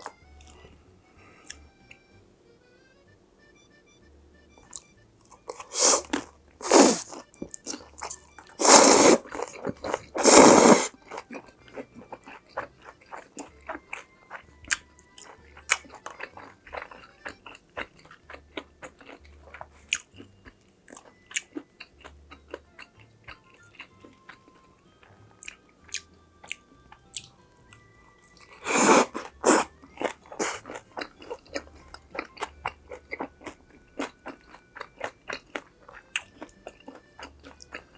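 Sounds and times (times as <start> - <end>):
quiet background music: 0.0 - 37.9
chewing: 4.6 - 37.9
crunchy bites: 28.4 - 37.9.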